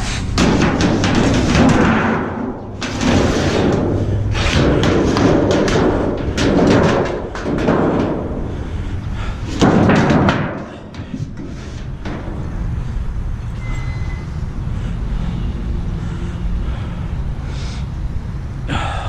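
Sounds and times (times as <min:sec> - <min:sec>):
metal clattering: 0:00.0 - 0:08.7
heavy thuds of scrap metal: 0:00.3 - 0:12.8.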